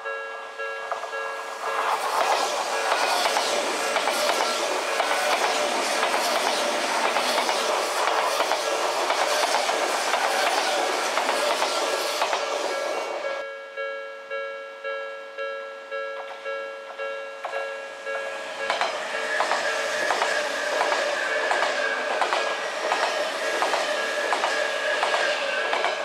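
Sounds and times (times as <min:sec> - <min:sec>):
crossing alarm dinging: 0:00.0 - 0:08.4, 0:09.7 - 0:26.0
train wheels clattering over rails: 0:00.9 - 0:12.9, 0:18.6 - 0:26.0.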